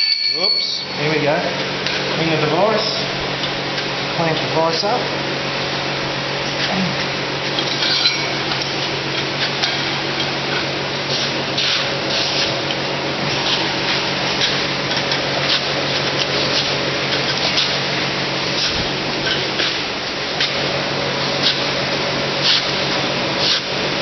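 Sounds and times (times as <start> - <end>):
mechanical hum: 0.0 - 24.0
metallic scrapes and clinks: 7.6 - 8.4.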